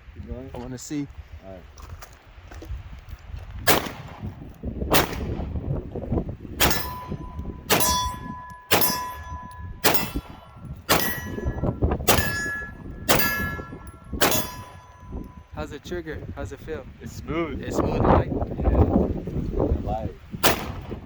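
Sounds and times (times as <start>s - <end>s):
pistol shots: 3.7s - 4.3s, 4.9s - 5.5s, 6.6s - 15.1s, 20.4s - 21.0s
short metallic ring: 6.6s - 15.6s.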